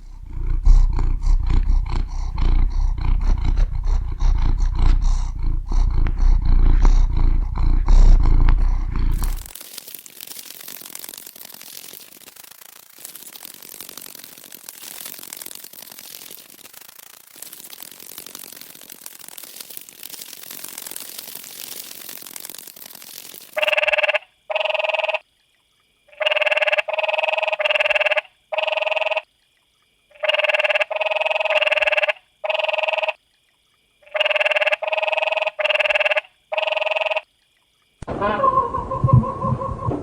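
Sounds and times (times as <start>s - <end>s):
steady hiss: 0.0s - 23.7s.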